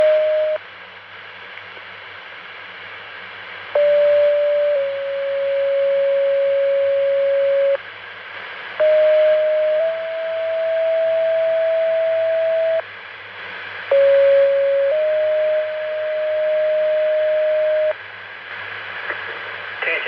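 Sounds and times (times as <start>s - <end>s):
two-tone paging tones: 0.0s - 0.6s, 3.8s - 7.8s, 8.8s - 12.8s, 13.9s - 18.0s
radio hiss: 18.5s - 20.0s.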